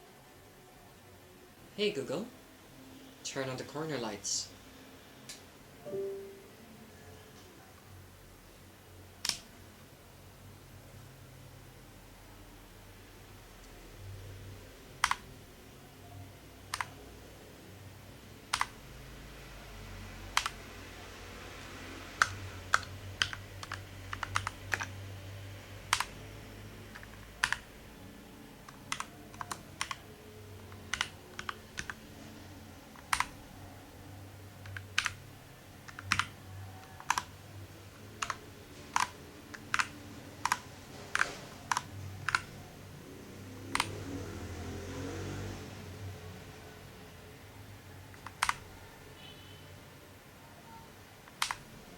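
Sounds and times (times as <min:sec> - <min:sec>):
mechanical keyboard typing: 0:15.0 - 0:15.4, 0:16.7 - 0:17.0, 0:18.5 - 0:18.8, 0:20.3 - 0:20.7, 0:22.2 - 0:25.0, 0:25.9 - 0:26.2, 0:26.9 - 0:27.8, 0:28.6 - 0:32.0, 0:32.9 - 0:33.5, 0:34.6 - 0:37.4, 0:38.0 - 0:42.6, 0:43.7 - 0:44.0, 0:48.1 - 0:48.8, 0:51.2 - 0:51.7.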